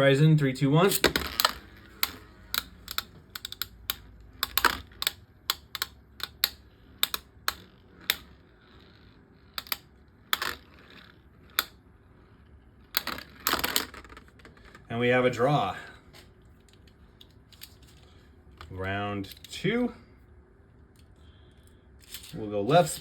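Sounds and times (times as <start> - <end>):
spinning tops clicking together: 0.9 - 14.3.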